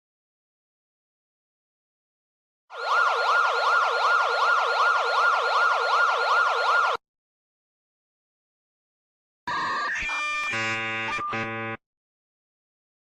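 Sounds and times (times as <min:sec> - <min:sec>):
electronic siren sweeping: 0:02.7 - 0:07.0, 0:09.5 - 0:11.8.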